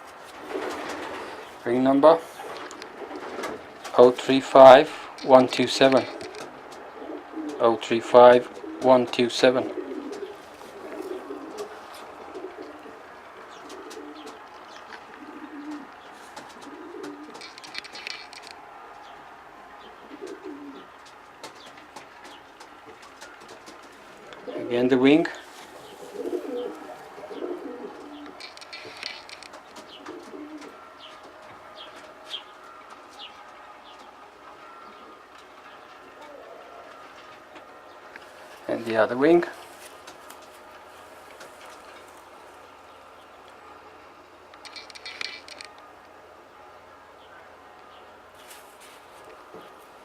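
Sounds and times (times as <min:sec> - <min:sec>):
pigeons cooing: 0:00.0 - 0:04.2, 0:04.8 - 0:19.1, 0:19.8 - 0:45.8
rustle: 0:00.0 - 0:18.6, 0:20.2 - 0:33.4, 0:38.1 - 0:43.6, 0:48.4 - 0:50.0.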